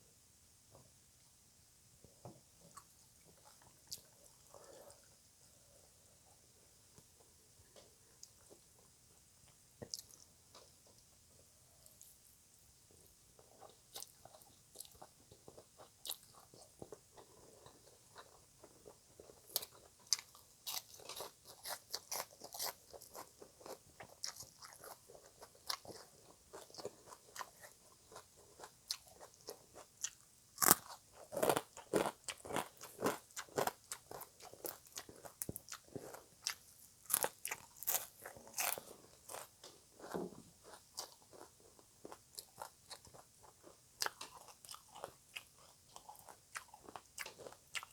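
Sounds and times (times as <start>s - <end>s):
chewing and crunching salad: 2.6s - 5.1s, 9.8s - 11.0s, 13.4s - 47.9s.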